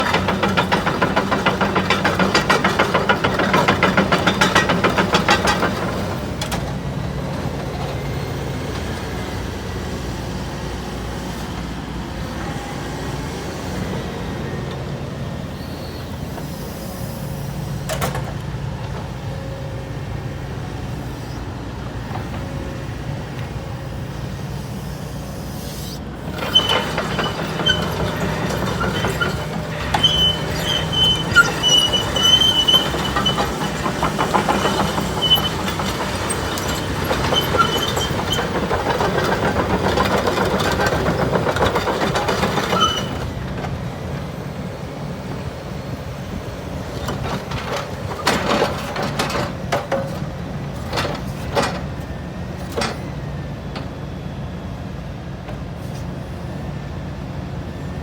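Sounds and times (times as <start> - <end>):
excavator diesel engine running: 0.0 - 58.0
high-pitched squeaks: 25.7 - 38.5.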